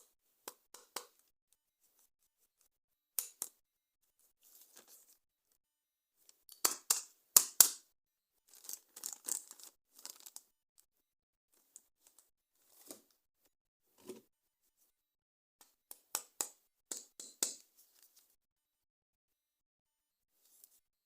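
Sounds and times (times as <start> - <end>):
packaging crinkling and rustling: 8.5 - 10.4
packaging ripping: 8.6 - 10.4.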